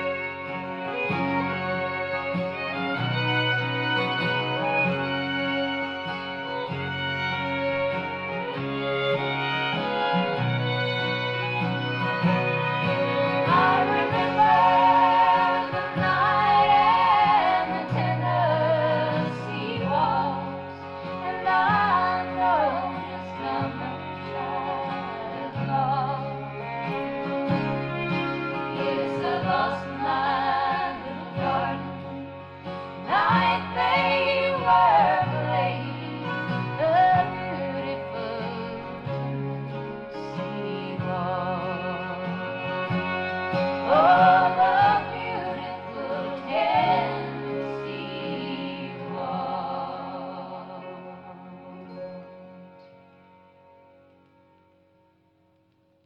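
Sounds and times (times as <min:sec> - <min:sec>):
instrumental backing: 0:00.0 - 0:56.0
person singing with vibrato: 0:12.9 - 0:27.6, 0:28.6 - 0:52.2.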